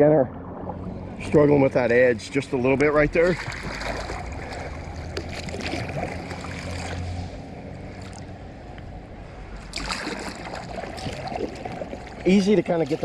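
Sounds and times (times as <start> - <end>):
water splashing around a kayak: 0.0 - 13.0.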